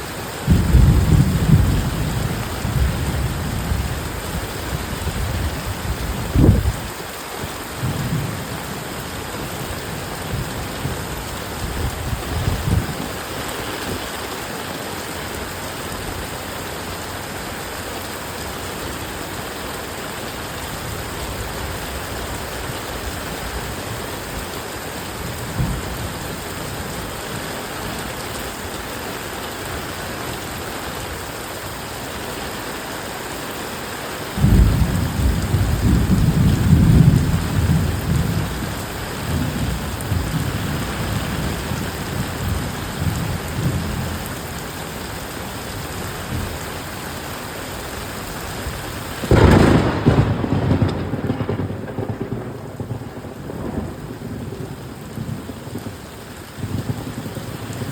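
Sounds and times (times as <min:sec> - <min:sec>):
heavy rain hissing: 0:00.0 - 0:57.9
rolling thunder: 0:00.4 - 0:06.9, 0:10.2 - 0:13.2, 0:34.4 - 0:44.1, 0:49.2 - 0:56.0.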